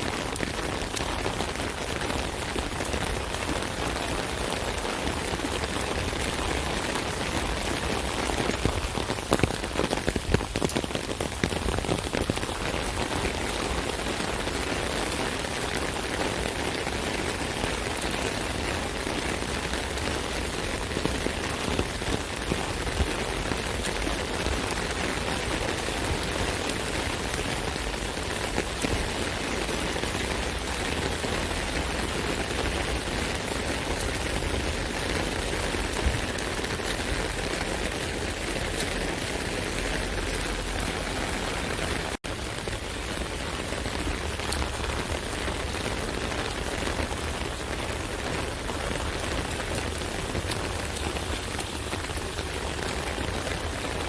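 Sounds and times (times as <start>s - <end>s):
rain on an umbrella: 0.0s - 54.0s.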